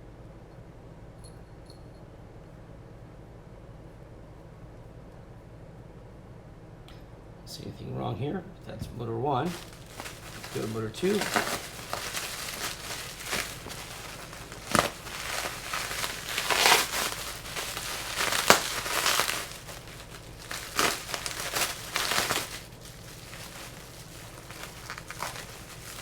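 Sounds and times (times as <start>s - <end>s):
packing material crinkling: 9.4s - 26.0s.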